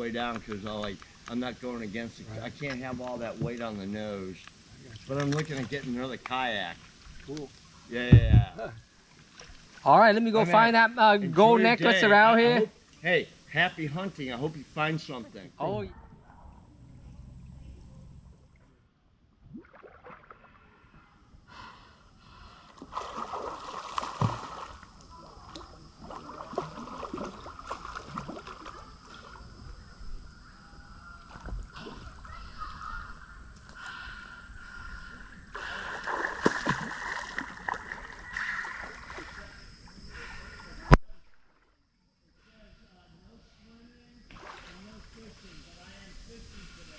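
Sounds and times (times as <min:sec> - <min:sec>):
water splashing against boat hull: 0:04.9 - 0:09.9, 0:22.8 - 0:29.4, 0:35.9 - 0:39.5.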